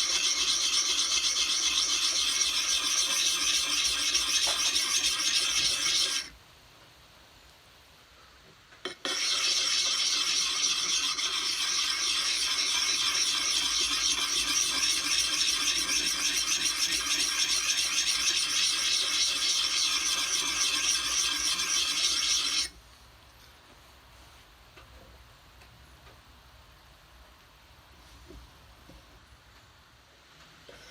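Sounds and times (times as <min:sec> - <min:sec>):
sharpening stone scraping axe: 0:00.0 - 0:06.3, 0:08.9 - 0:22.7.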